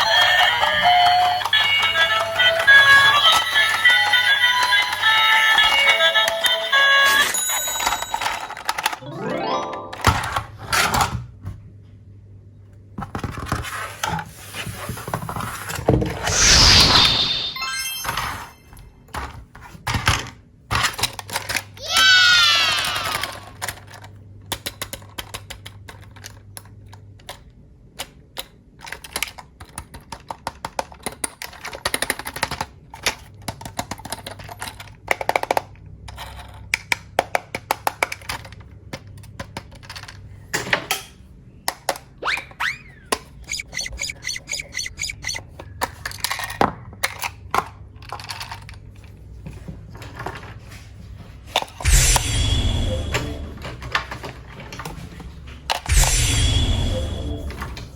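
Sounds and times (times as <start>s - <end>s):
plastic toys clicking and clattering: 0.0s - 11.4s, 13.0s - 14.2s, 19.1s - 50.7s
short squeaks: 42.6s - 45.4s.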